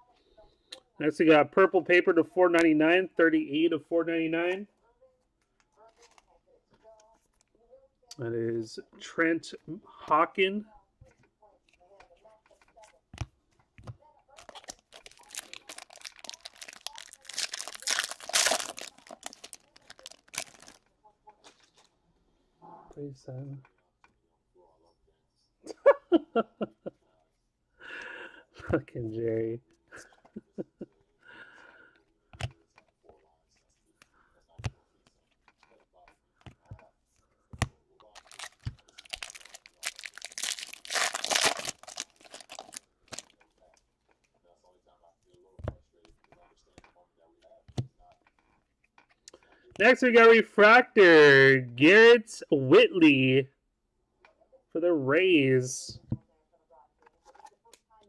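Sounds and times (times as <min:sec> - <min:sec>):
foil wrapper crinkling and tearing: 0:14.4 - 0:20.8, 0:38.0 - 0:43.3.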